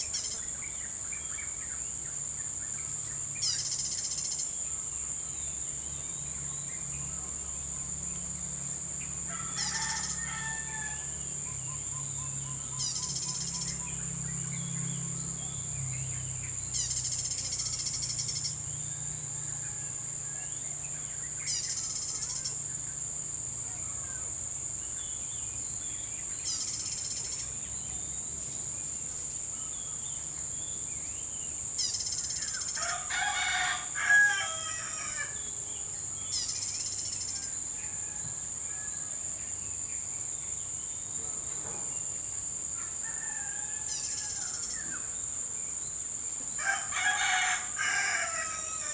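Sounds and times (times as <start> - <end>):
pulsing insect call: 0.0 - 48.9
high-pitched insect buzz: 2.9 - 19.3, 21.2 - 30.5, 31.4 - 38.6
rooster crowing: 9.3 - 11.4, 18.8 - 20.6, 32.7 - 35.5, 37.4 - 39.2, 42.8 - 44.8, 46.5 - 48.9.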